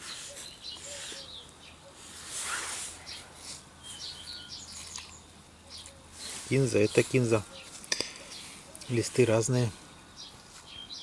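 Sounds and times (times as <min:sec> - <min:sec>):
high bird chirps: 0:03.0 - 0:11.0.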